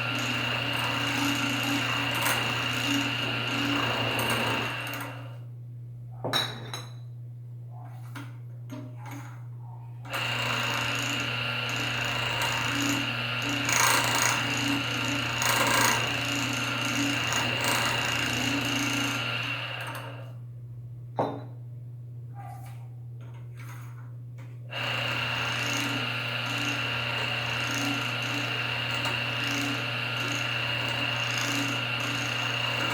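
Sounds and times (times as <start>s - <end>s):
electric motor whining: 0.0s - 5.4s, 10.1s - 20.2s, 24.7s - 32.9s.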